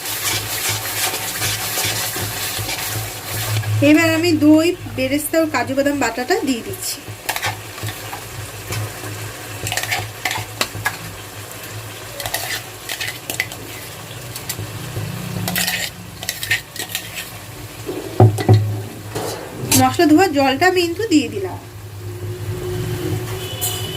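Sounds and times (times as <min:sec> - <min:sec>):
spice paste sizzling in pan: 0:00.0 - 0:22.0
spatula scraping and clinking on pan: 0:00.1 - 0:04.2, 0:07.2 - 0:08.8, 0:09.6 - 0:11.0, 0:12.1 - 0:14.7, 0:15.4 - 0:20.0.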